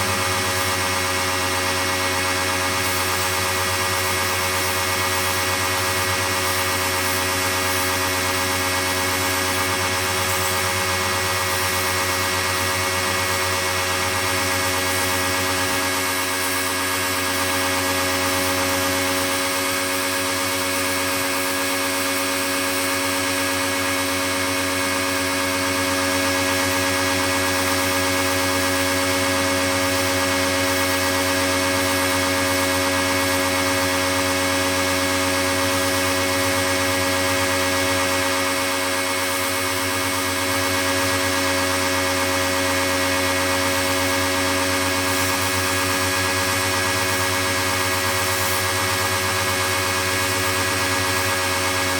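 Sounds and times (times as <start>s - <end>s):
pressure washer running: 0.0s - 51.9s.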